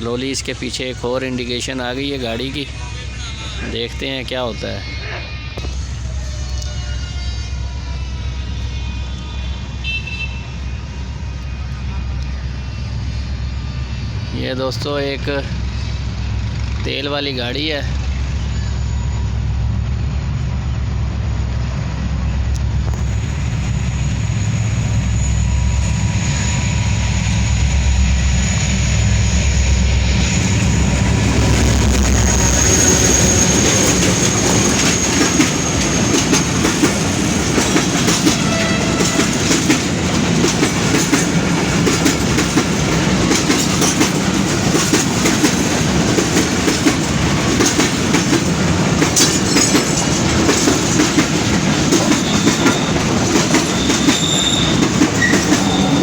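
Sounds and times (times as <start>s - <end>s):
diesel locomotive rumble: 0.0s - 56.0s
high wheel squeals: 3.4s - 11.6s, 18.0s - 19.6s, 24.3s - 45.7s, 47.0s - 56.0s
train wheels clacking over rail joints: 30.5s - 56.0s.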